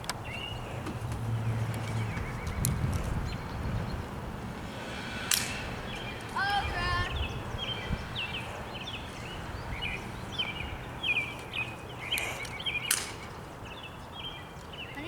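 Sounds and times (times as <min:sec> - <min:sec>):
small birds chirping: 0:00.0 - 0:15.0
sharp snaps: 0:04.9 - 0:06.4, 0:11.4 - 0:13.4.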